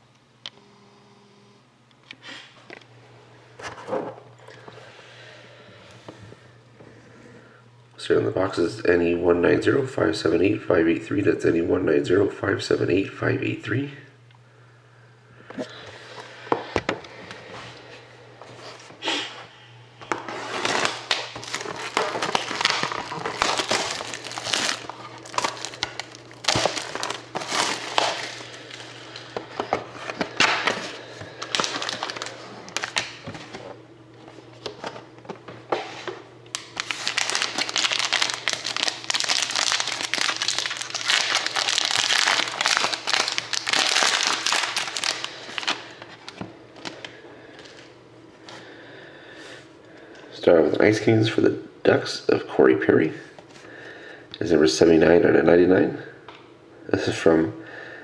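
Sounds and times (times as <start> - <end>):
plastic wrapping crinkling and tearing: 20.1 - 33.6, 36.5 - 47.9.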